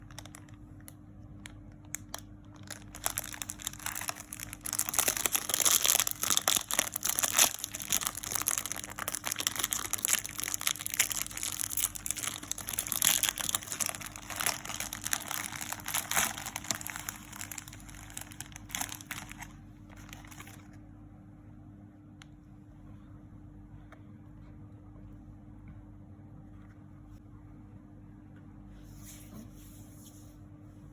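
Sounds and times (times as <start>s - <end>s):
packaging crinkling: 0.0s - 20.8s.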